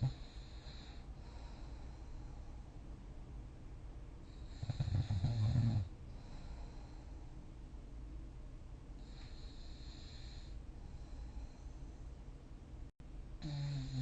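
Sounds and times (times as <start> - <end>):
quiet breathing: 0.0 - 3.4, 4.1 - 7.9, 8.9 - 12.8
person snoring: 4.4 - 6.6, 13.4 - 14.0.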